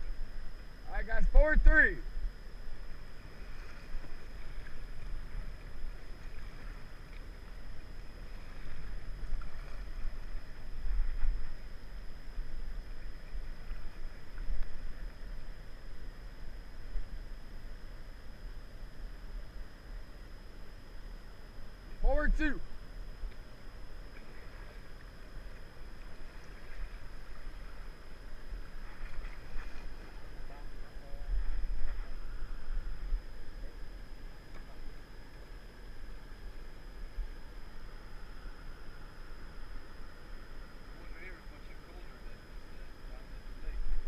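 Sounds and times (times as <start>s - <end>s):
paddle splashes: 2.9s - 11.7s, 24.1s - 27.9s, 28.5s - 30.6s.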